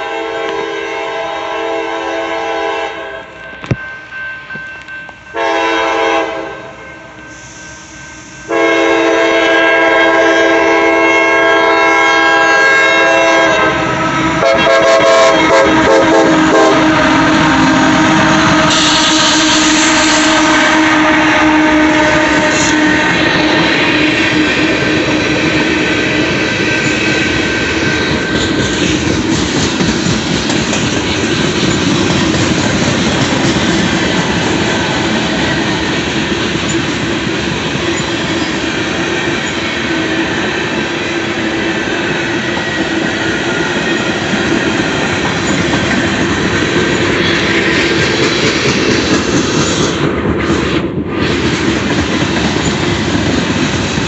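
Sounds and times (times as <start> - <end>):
wheels clacking over rails: 22.3 - 54.0.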